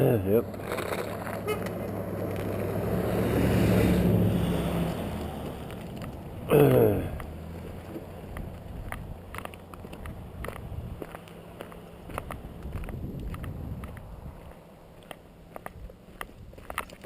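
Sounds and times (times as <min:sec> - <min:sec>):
vehicle passing by: 0:00.0 - 0:15.6
short voice-like sound: 0:06.5 - 0:07.2.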